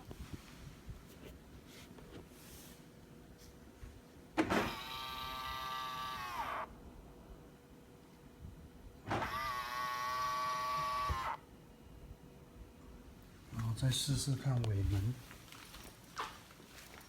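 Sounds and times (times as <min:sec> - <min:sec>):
mirror motor whine: 0:04.5 - 0:06.8, 0:09.0 - 0:11.5.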